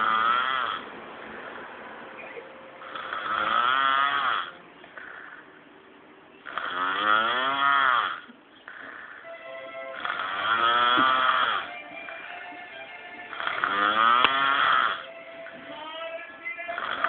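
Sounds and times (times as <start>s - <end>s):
man snoring heavily: 0.0s - 0.9s, 2.8s - 5.5s, 6.4s - 9.2s, 10.0s - 11.7s, 13.3s - 15.1s, 16.8s - 17.0s.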